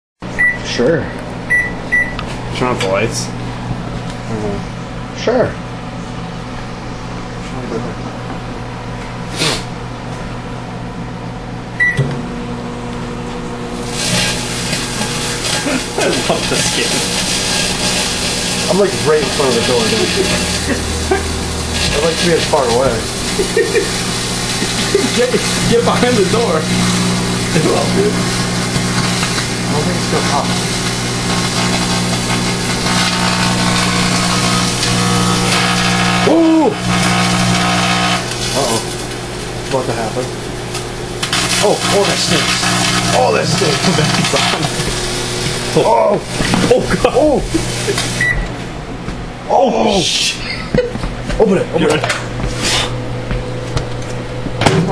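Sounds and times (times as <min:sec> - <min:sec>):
microwave oven humming: 0:00.2 - 0:54.9
keypad beep with clicks: 0:11.8 - 0:12.0
person exclaiming: 0:36.2 - 0:36.8, 0:45.8 - 0:47.5.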